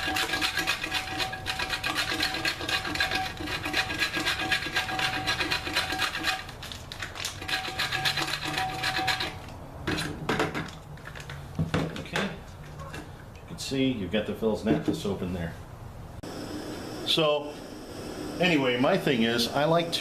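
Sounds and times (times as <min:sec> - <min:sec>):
soap being shaved rasping: 0:00.0 - 0:09.5.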